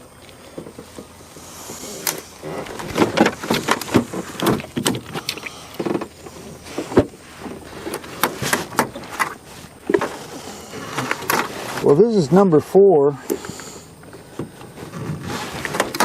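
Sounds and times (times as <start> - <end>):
knocks and rattling in a boat: 2.5 - 11.8, 13.2 - 16.0.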